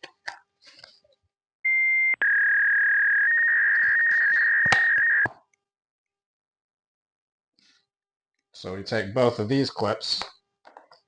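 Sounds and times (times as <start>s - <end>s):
electronic beep tones: 1.7s - 5.3s
clicks: 2.2s - 5.3s.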